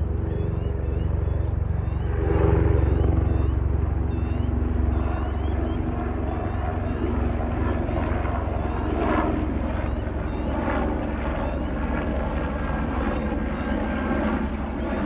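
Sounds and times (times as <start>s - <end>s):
helicopter rotor chopping: 0.0s - 15.0s.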